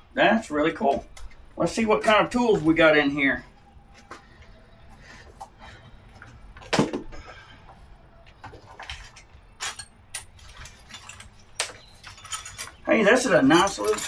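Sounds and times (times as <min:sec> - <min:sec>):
hand tools clicking and knocking: 0:08.9 - 0:14.0.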